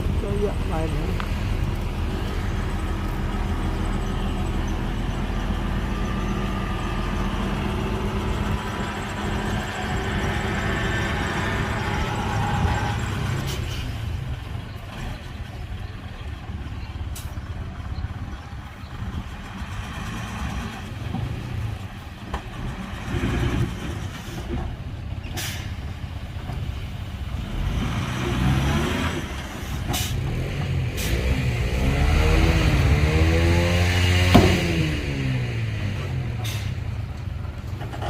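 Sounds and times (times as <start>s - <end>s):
heavy diesel machinery rumbling: 0.0s - 38.0s
sharp knocks: 34.2s - 34.8s.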